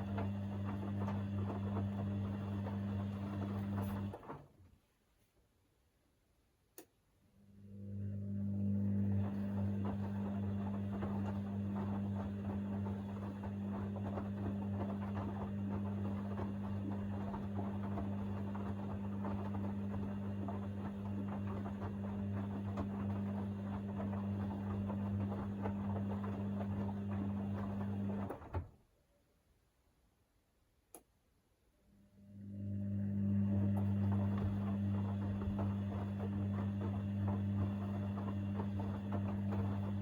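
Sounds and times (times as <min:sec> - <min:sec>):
wet laundry tumbling in drum: 0:00.0 - 0:04.6, 0:08.9 - 0:28.8, 0:33.4 - 0:40.0
washing machine motor humming: 0:00.0 - 0:04.7, 0:07.4 - 0:28.8, 0:31.9 - 0:40.0.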